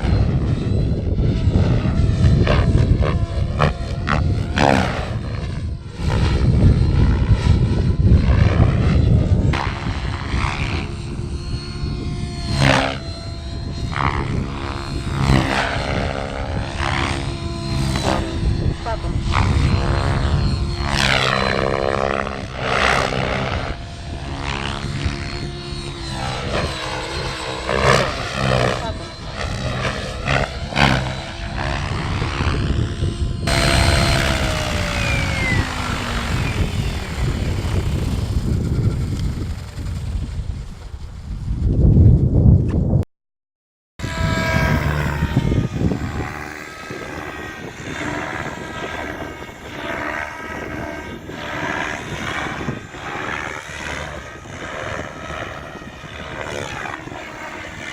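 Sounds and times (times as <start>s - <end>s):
steady rushing noise: 0.0s - 42.6s
remote-control helicopter whine: 0.0s - 43.0s, 44.0s - 57.9s
wind rumble on microphone: 0.0s - 43.0s, 44.0s - 57.9s.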